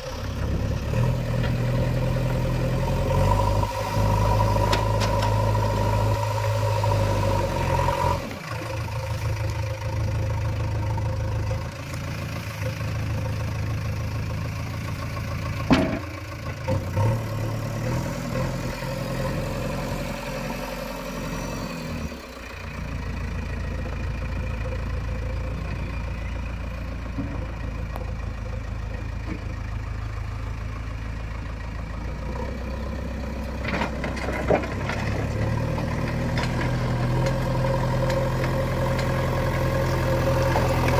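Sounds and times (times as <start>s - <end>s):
heavy diesel engine running: 0.0s - 40.9s.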